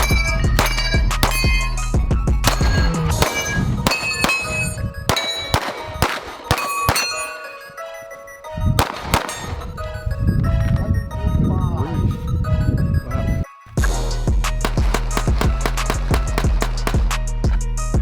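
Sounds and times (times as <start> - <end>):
pistol shots: 0.0 - 8.0, 8.8 - 10.1, 14.4 - 17.7
metallic clang of steel targets: 0.0 - 8.2, 8.8 - 10.1.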